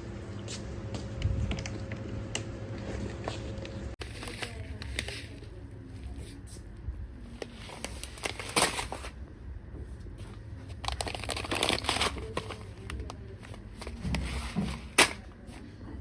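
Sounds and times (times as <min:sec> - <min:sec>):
packaging crinkling and rustling: 0:04.0 - 0:06.4, 0:07.2 - 0:09.2, 0:10.2 - 0:15.6.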